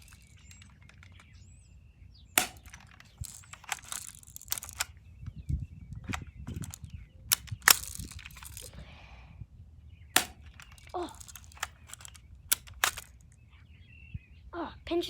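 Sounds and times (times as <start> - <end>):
airsoft gun clicks and snaps: 0.0 - 1.3, 2.4 - 5.0, 6.1 - 8.7, 10.2 - 13.3.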